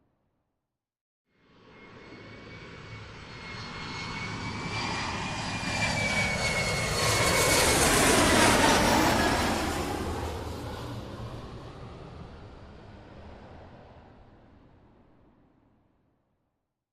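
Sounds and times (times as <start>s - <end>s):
airplane engine flying over: 1.4s - 15.7s
thin high engine whine: 1.5s - 11.3s.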